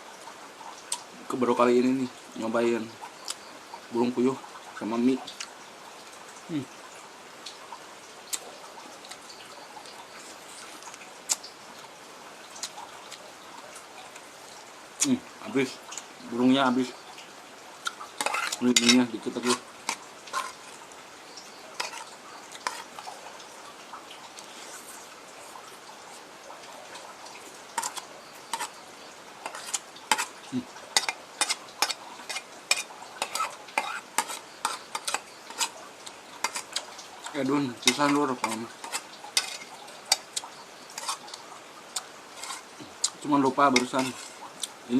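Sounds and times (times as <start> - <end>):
steady hiss: 0.0 - 44.9
person chewing food: 12.6 - 13.2, 21.8 - 23.2, 26.9 - 28.8, 31.0 - 37.4, 38.4 - 43.2, 43.8 - 44.8
wet chewing and lip-smacking: 42.8 - 43.2.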